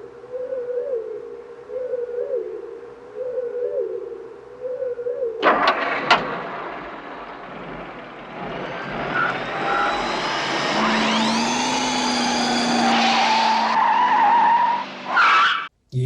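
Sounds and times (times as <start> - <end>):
vehicle with jet-like whine: 5.4 - 15.2.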